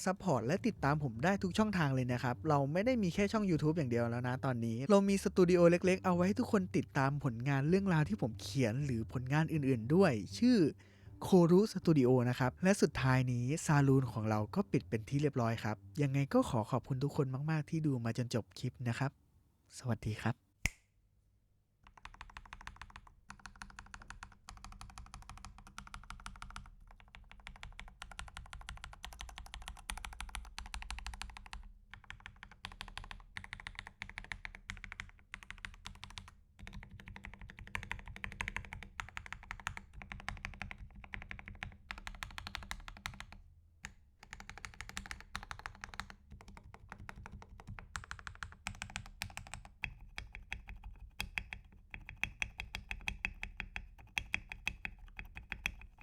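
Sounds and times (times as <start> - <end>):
fast keyboard typing: 21.8 - 43.4, 44.2 - 56.0.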